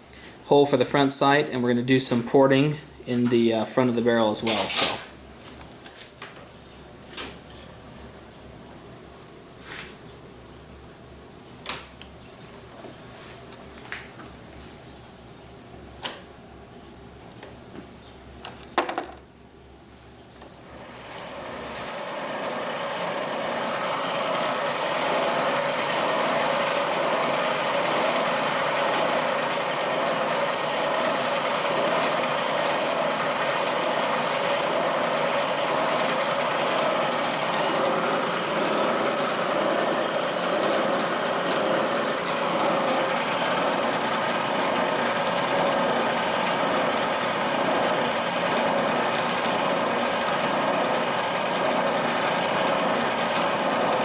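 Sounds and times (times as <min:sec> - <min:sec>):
milling machine spindle running: 0:20.7 - 0:54.0.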